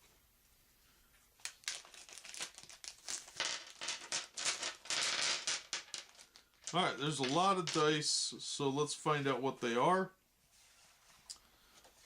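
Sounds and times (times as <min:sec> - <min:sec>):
plastic bag crinkling: 0:01.4 - 0:05.2.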